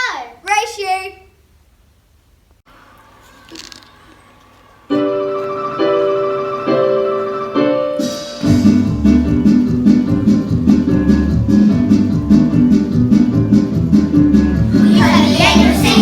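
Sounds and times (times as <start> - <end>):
piano chords: 4.8 - 16.0
band accompaniment with bass: 6.8 - 16.0.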